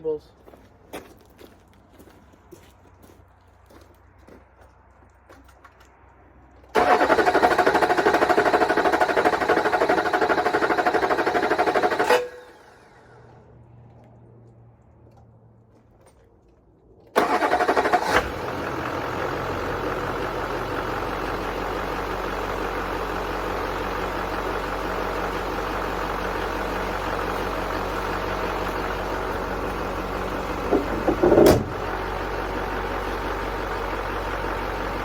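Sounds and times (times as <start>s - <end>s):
diesel engine starting and idling: 6.5s - 15.2s, 17.0s - 35.0s.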